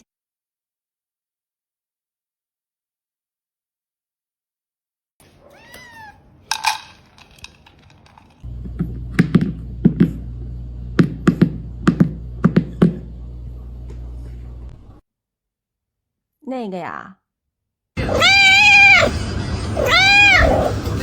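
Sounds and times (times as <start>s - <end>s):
cat meowing: 5.4s - 6.3s, 18.0s - 19.2s, 19.8s - 20.8s.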